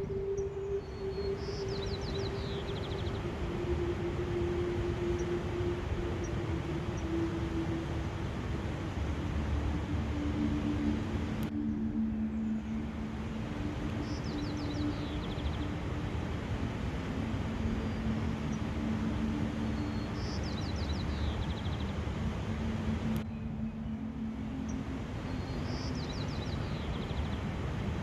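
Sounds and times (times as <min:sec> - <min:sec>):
low hum: 0:00.0 - 0:28.0
rushing outdoor ambience: 0:00.0 - 0:28.0
songbird singing: 0:00.0 - 0:28.0.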